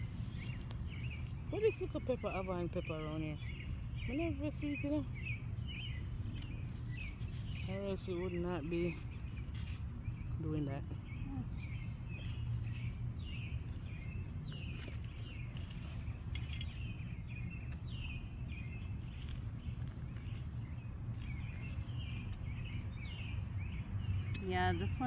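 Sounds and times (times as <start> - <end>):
bird chirping: 0.0 - 25.0
steady low rumble: 0.0 - 25.0
faint rustles: 5.1 - 8.2.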